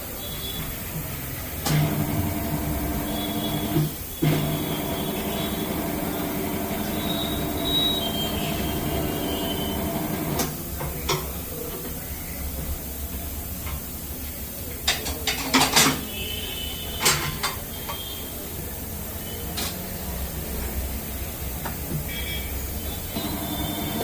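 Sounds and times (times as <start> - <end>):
electric motor turning turntable: 1.7 - 10.5, 23.2 - 24.0.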